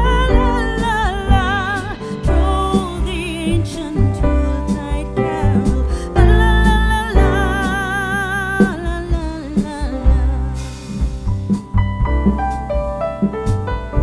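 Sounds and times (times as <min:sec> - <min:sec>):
song with vibrato vocals: 0:00.0 - 0:11.2.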